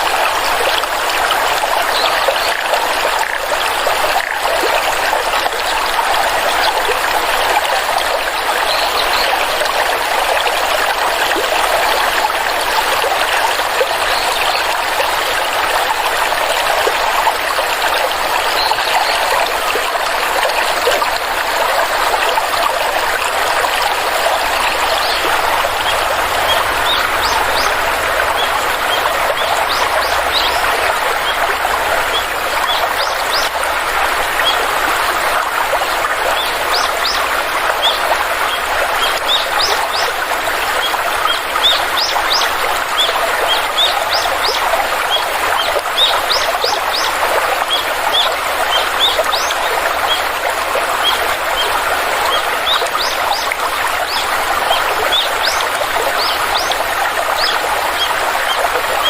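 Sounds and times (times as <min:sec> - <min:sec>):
stream water flowing: 0:00.0 - 0:59.0
birds chirping: 0:23.9 - 0:34.7, 0:51.0 - 0:58.6.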